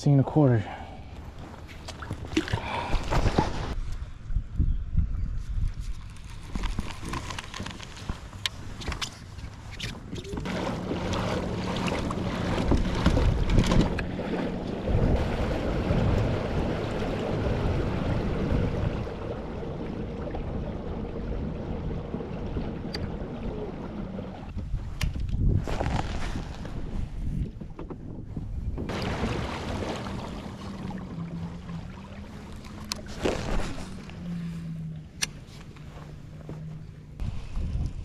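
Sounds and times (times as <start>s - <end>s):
wind buffeting microphone: 1.1s - 7.2s, 9.5s - 34.6s, 37.2s - 38.0s
rushing water: 10.4s - 24.5s, 28.9s - 34.2s.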